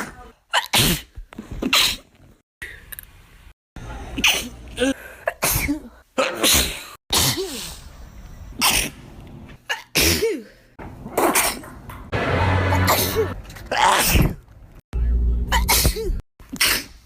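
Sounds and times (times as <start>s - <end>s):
person sneezing: 4.2s - 7.8s, 9.7s - 10.6s, 15.5s - 17.0s.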